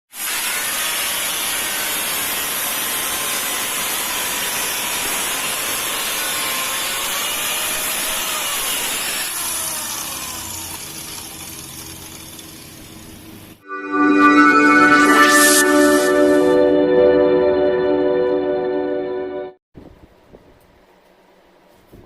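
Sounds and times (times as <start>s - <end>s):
angle grinder cutting: 0.2s - 11.4s.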